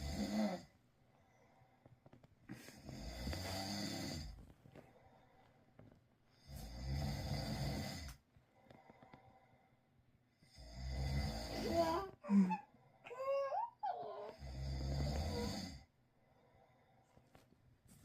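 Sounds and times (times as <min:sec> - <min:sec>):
man snoring: 0:00.0 - 0:00.7, 0:02.8 - 0:04.4, 0:06.4 - 0:08.2, 0:10.4 - 0:12.6, 0:14.2 - 0:15.9
quiet breathing: 0:00.0 - 0:13.3, 0:14.2 - 0:18.0.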